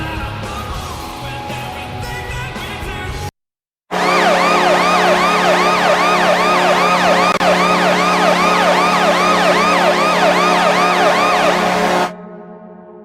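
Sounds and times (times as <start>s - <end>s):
low goal horn blast: 3.9s - 12.1s
warbling siren: 3.9s - 12.1s.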